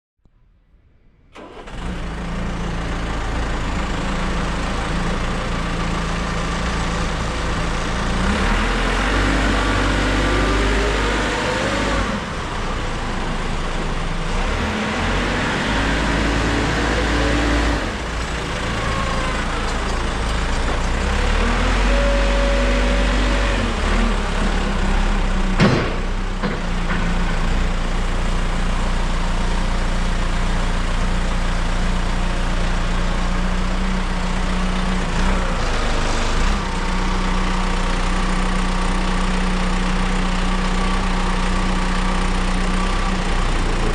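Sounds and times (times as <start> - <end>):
diesel engine revving: 1.3 - 43.9
sharp knock: 25.6 - 26.1.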